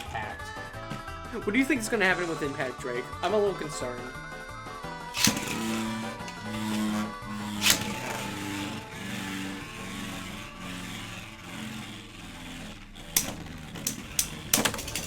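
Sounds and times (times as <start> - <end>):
spinning tops whirring and scraping: 1.5 - 15.0
sharp clacks of tops colliding: 13.2 - 15.0.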